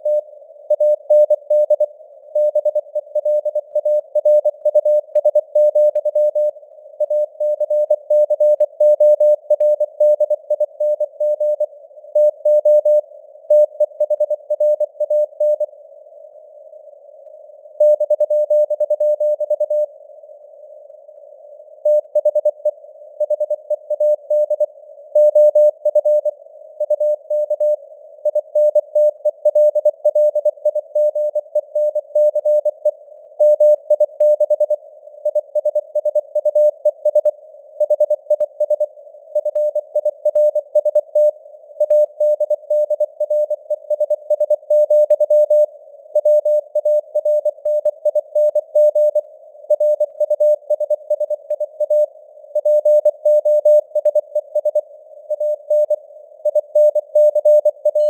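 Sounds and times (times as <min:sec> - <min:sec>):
morse code tone: 0:56.9 - 0:58.0.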